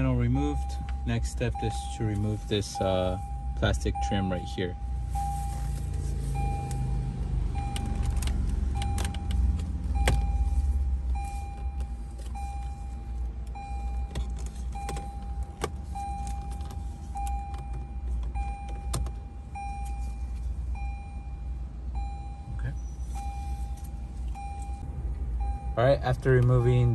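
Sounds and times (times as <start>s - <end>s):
car warning chime beeping: 0.0s - 26.9s.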